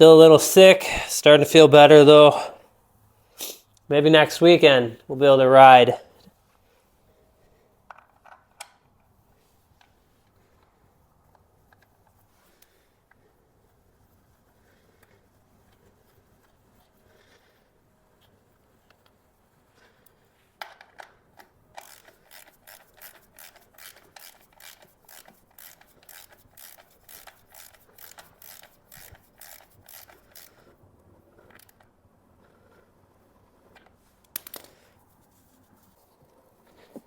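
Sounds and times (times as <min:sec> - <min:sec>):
ratchet wrench clicking: 0:21.8 - 0:30.7.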